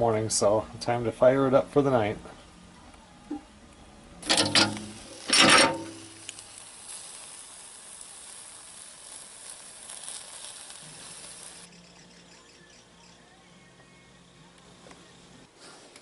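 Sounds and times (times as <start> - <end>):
fire hissing and crackling: 4.2 - 12.0.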